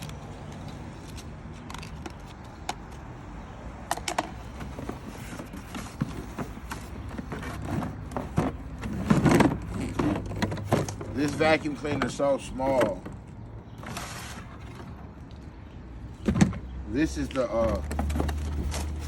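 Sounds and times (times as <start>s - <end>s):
plastic attachments clicking and scraping: 0.0s - 3.1s, 3.8s - 15.5s, 17.1s - 19.0s
plastic clatter: 3.9s - 15.1s, 17.6s - 19.0s.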